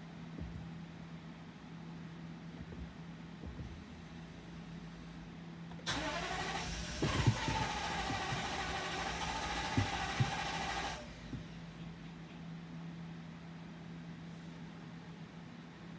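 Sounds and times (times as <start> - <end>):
low engine knocks: 0.3 - 0.9, 2.5 - 4.0, 6.8 - 11.6
car engine cranking: 5.7 - 11.4.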